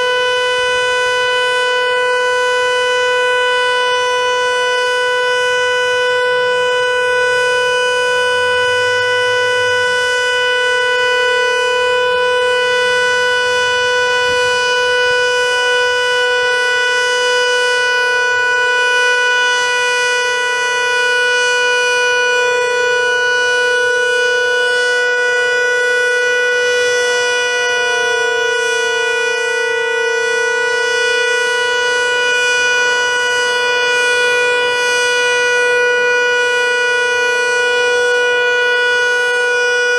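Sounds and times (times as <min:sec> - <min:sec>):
outdoor warning siren steady tone: 0:00.0 - 0:39.9.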